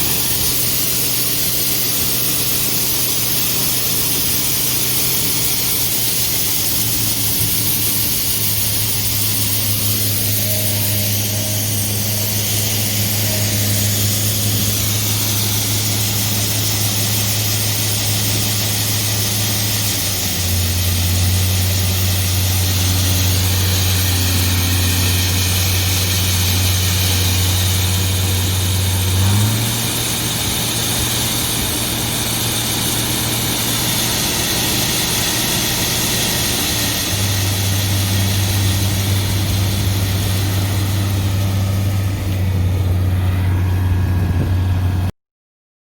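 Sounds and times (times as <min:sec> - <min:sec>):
heavy machinery engine running: 0:00.0 - 0:45.1.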